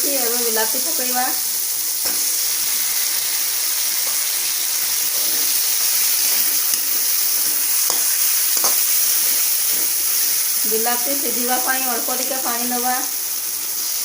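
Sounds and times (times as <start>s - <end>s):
tomatoes sizzling in oil: 0.0s - 14.0s.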